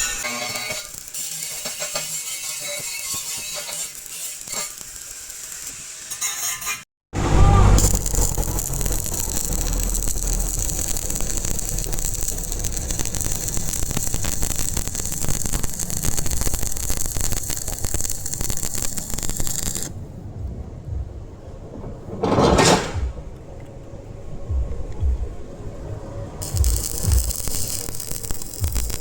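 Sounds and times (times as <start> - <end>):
welding arc crackling: 0.0 - 20.0, 26.4 - 29.0.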